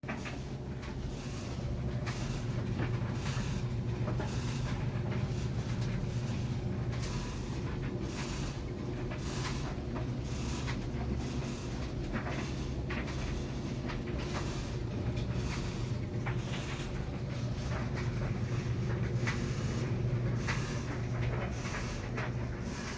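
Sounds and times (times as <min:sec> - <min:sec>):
dryer humming: 0:00.0 - 0:22.9
grinding scrape of dryer drum: 0:00.0 - 0:22.9.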